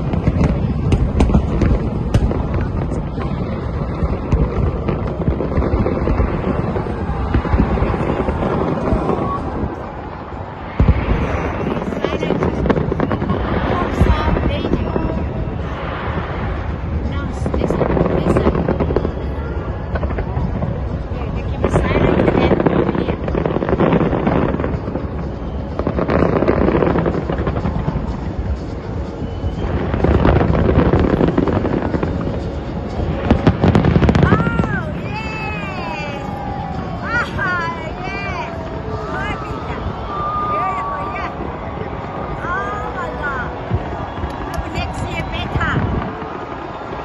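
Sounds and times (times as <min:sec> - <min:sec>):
fireworks booming and crackling: 0:00.0 - 0:47.0
loud firework bang: 0:10.7 - 0:14.6.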